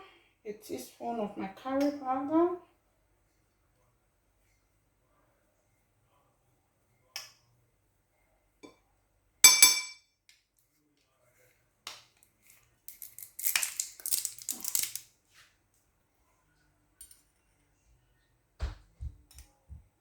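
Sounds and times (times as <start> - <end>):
teaspoon clinking against dish: 9.4 - 10.0.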